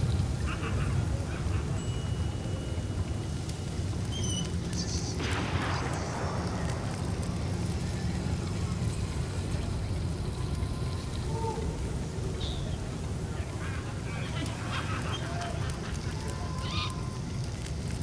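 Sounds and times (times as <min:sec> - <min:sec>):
hissing burst: 0:05.2 - 0:10.0
low rumble: 0:05.2 - 0:11.1.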